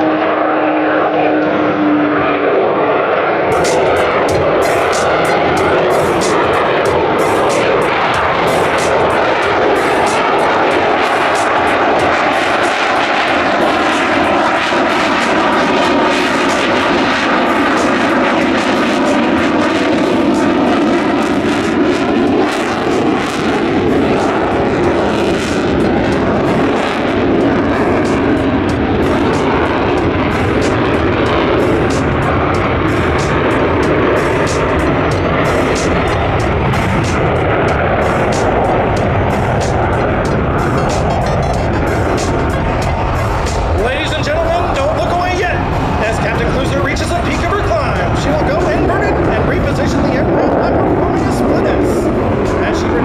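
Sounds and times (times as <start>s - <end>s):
jet engine roaring in flight: 0.0s - 53.0s.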